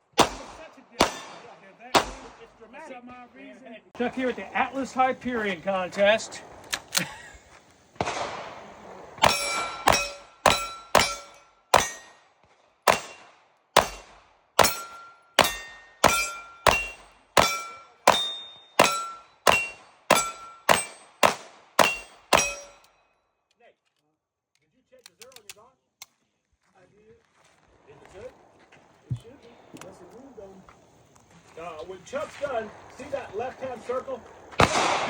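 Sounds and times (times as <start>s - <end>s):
pistol shots: 0.1s - 2.6s, 8.0s - 22.9s, 34.2s - 35.0s
short metallic ring: 9.2s - 12.2s, 14.6s - 21.2s, 21.8s - 23.0s.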